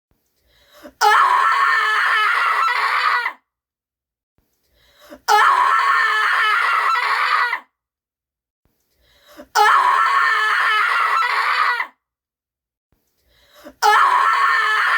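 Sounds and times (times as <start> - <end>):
woman screaming: 1.0 - 3.4, 5.3 - 7.7, 9.6 - 12.0, 13.8 - 14.9.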